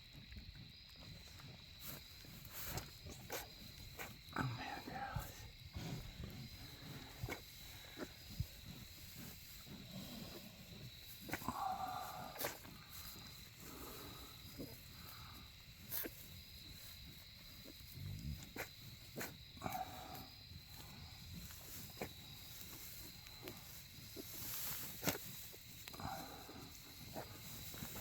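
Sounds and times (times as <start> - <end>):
sow grunting: 2.5 - 16.2, 17.8 - 21.6, 25.8 - 28.0.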